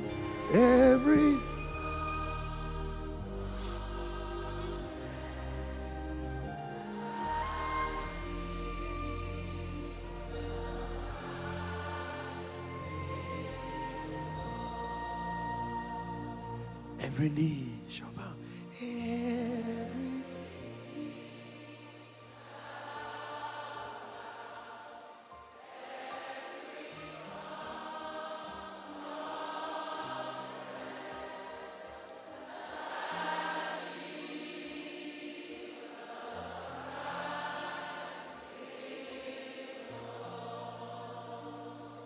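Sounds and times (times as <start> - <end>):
choir singing: 0.0 - 42.0.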